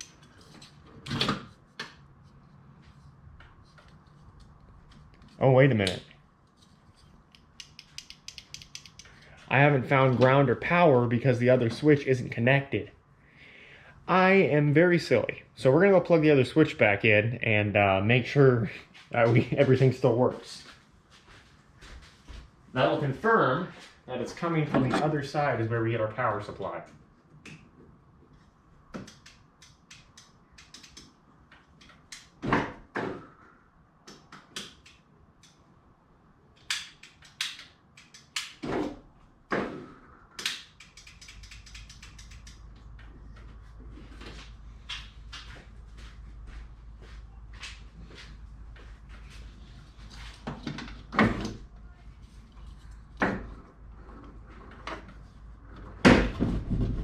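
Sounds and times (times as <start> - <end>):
low steady hum: 39.0 - 57.0.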